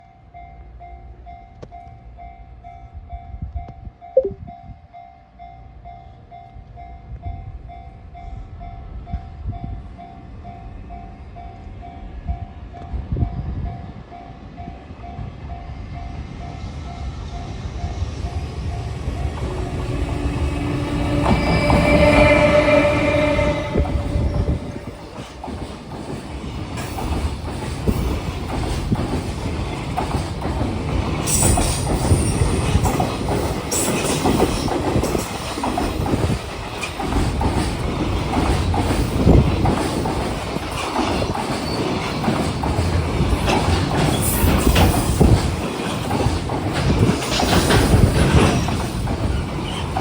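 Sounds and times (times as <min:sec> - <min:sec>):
freight train approaching: 0:00.0 - 0:50.0
level-crossing warning bell: 0:18.7 - 0:25.8.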